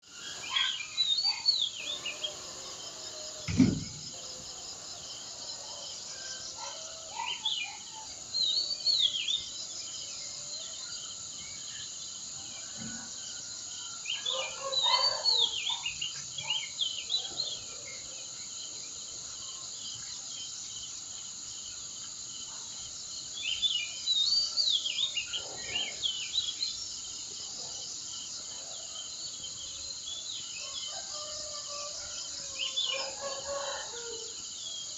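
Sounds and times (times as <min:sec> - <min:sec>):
birds chirping and whistling: 0:00.1 - 0:04.2
low thump: 0:03.4 - 0:04.2.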